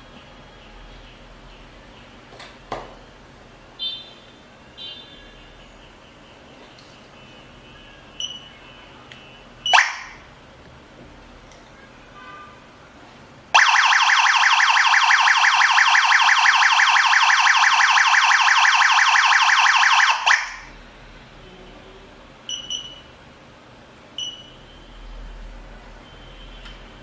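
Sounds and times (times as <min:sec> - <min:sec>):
alarm siren warbling: 0:13.6 - 0:20.7.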